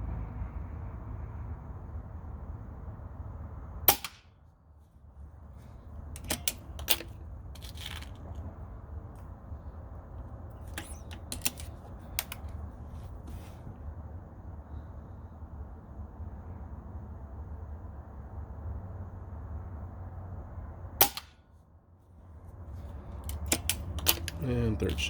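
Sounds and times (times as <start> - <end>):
air rifle shot crack: 3.9 - 4.3, 21.0 - 21.4
rifle mechanism clicks: 6.2 - 8.2, 10.7 - 12.5, 23.2 - 25.0.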